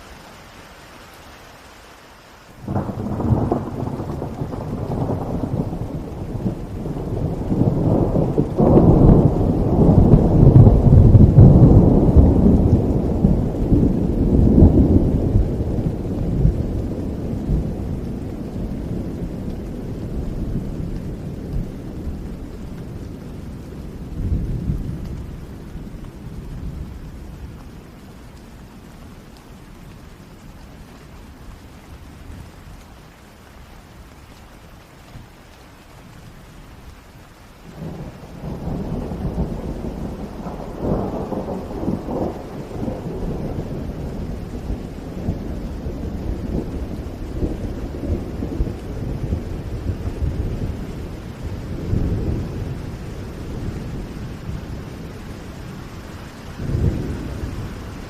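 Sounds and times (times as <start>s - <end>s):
steady rain: 0.0s - 58.0s
rolling thunder: 2.6s - 27.7s, 37.7s - 58.0s.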